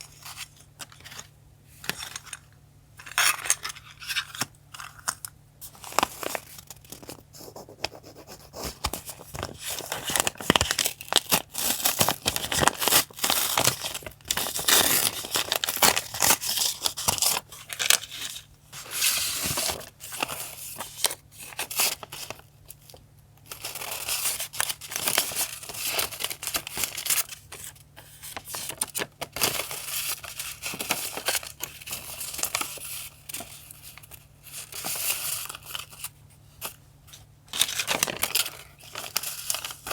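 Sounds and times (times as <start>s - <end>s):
paper crinkling and tearing: 8.4s - 22.4s, 23.5s - 39.9s
packaging rustling and clicks: 37.5s - 39.9s.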